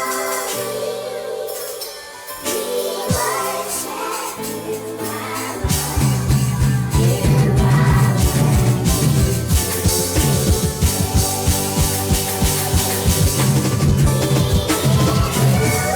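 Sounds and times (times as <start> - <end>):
choir singing held chords: 0.0 - 15.9
band with drums and bass: 5.6 - 15.9.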